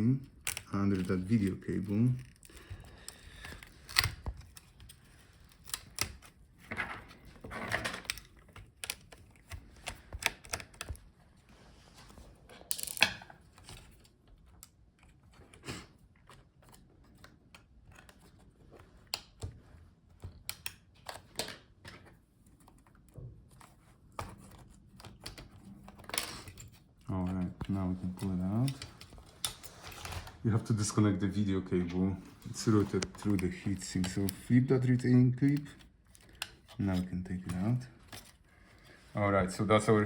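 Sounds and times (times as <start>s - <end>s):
small clicks and taps: 16.2s - 26.3s.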